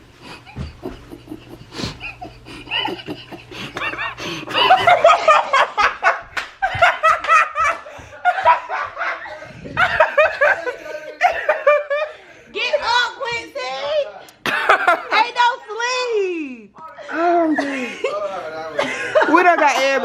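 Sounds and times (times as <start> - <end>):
group of people laughing: 0.2 - 12.4, 14.4 - 15.3, 17.2 - 20.0.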